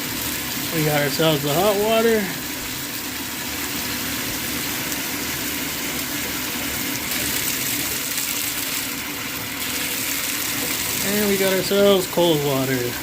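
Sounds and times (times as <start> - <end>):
shower water running: 0.0 - 13.0.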